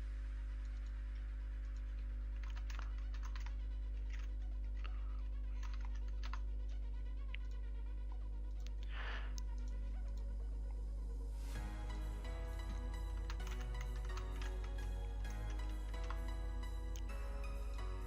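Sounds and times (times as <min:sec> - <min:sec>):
low electrical hum: 0:00.0 - 0:18.0
computer keyboard typing: 0:02.4 - 0:04.3, 0:05.6 - 0:06.4, 0:12.6 - 0:16.4.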